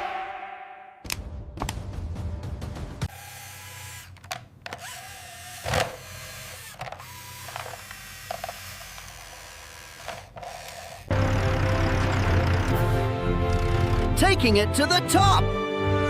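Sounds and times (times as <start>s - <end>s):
small electric motor whirring: 3.1s - 11.2s.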